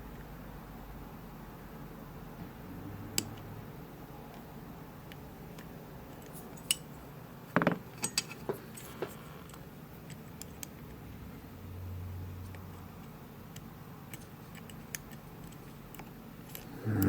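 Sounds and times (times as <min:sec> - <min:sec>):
lock picks clicking and scraping: 0:14.1 - 0:16.7.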